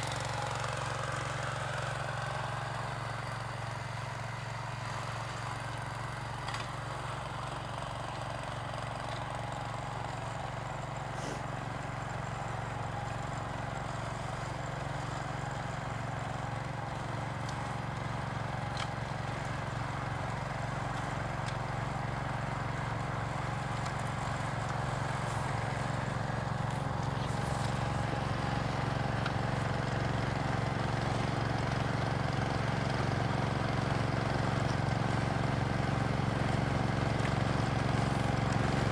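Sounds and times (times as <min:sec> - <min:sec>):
tractor engine hum: 0:19.9 - 0:38.9.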